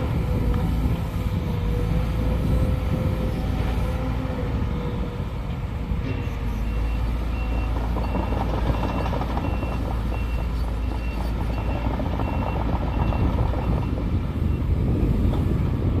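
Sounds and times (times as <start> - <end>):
excavator diesel engine running: 0.0 - 16.0
reversing alarm beeping: 6.7 - 14.7.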